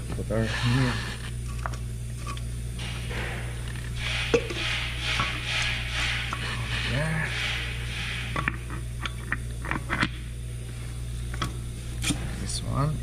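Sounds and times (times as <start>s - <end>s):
low shop hum: 0.0s - 13.0s
rubbing and scraping of metal parts: 0.2s - 10.2s.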